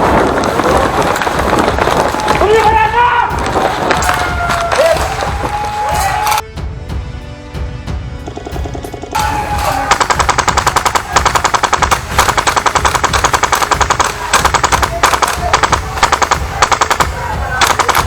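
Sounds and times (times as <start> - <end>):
airsoft rifle full-auto bursts: 0.0 - 2.6, 9.2 - 18.0.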